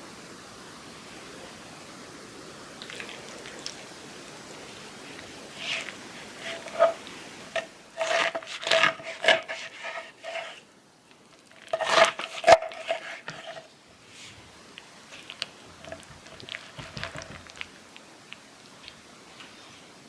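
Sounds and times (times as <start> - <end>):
utensil stirring in a bowl: 4.6 - 10.7, 11.4 - 13.7, 15.1 - 17.7.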